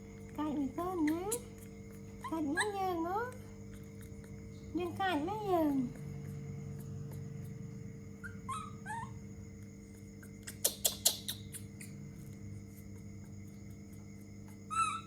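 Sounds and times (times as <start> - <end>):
monkey squeaky chirps: 8.2 - 9.2, 10.4 - 12.0, 14.7 - 15.0.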